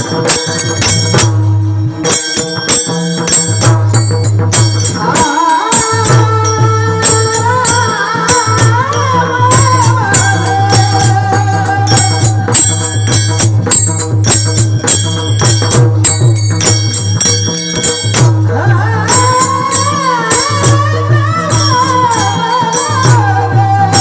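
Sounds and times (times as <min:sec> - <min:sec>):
jingling metallic percussion: 0:00.0 - 0:24.0.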